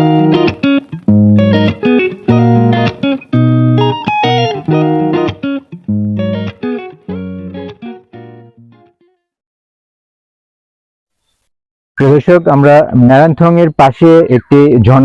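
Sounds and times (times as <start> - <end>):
bass line: 0.0 - 5.2, 5.9 - 8.8
plucked guitar notes: 0.0 - 9.2.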